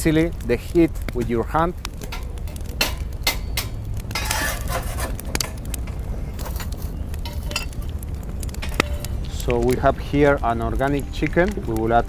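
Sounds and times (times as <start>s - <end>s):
steady low rumble: 0.0s - 12.0s
short scrape: 4.2s - 5.6s.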